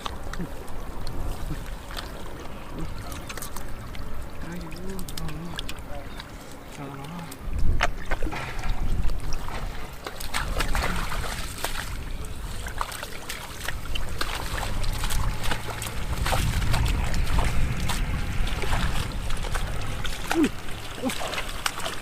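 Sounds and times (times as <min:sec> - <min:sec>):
muddy water splashing: 0:00.0 - 0:22.0
heavy low rumble: 0:14.1 - 0:20.9.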